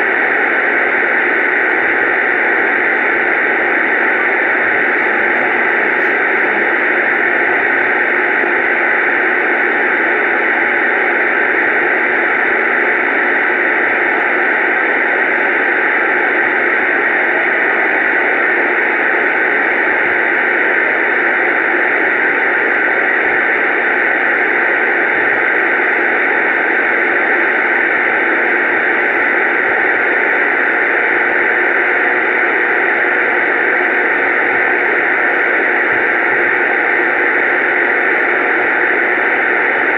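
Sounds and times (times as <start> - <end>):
radio static hiss: 0.0 - 39.9.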